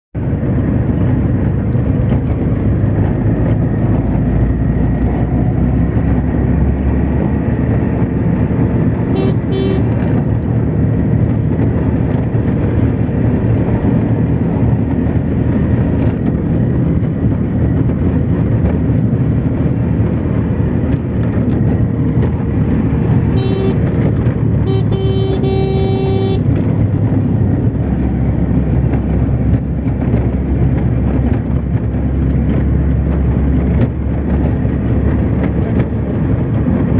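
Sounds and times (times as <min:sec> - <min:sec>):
vehicle rumble: 0:00.2 - 0:36.9
vehicle horn tooting: 0:09.1 - 0:10.1, 0:23.3 - 0:26.6.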